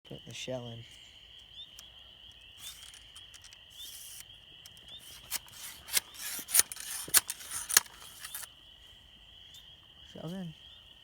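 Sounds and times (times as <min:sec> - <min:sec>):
high insect chirr: 0:00.1 - 0:11.0
clicks and scraping of rifle breech: 0:02.4 - 0:08.5.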